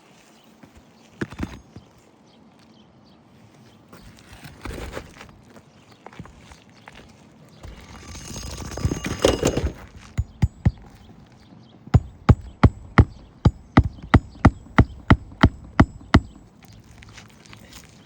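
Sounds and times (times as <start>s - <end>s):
scraping and rustling: 4.0s - 5.6s, 6.2s - 11.2s
hammer driving nails: 7.6s - 11.2s, 12.0s - 17.1s.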